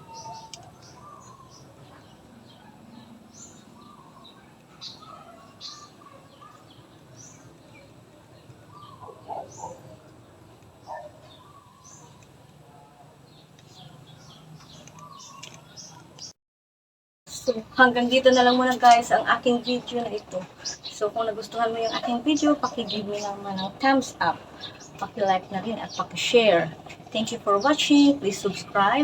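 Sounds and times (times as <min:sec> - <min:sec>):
small birds chirping: 0:00.0 - 0:16.3, 0:17.3 - 0:29.0
low background hum: 0:17.3 - 0:29.0.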